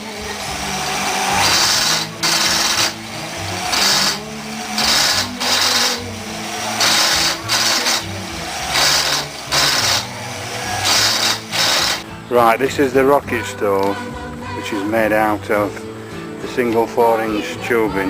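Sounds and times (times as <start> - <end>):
coconut grinder grating: 0.0 - 12.0
motor hum: 0.0 - 12.2.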